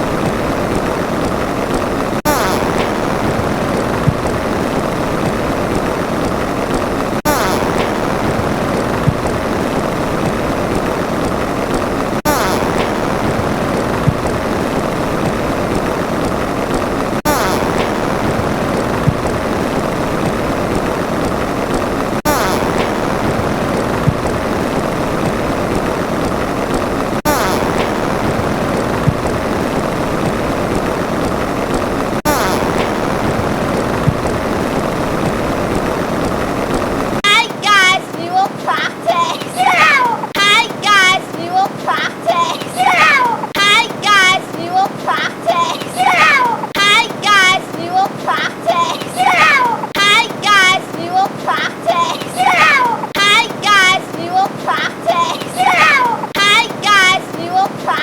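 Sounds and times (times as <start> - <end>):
steady rushing noise: 0.0 - 58.0.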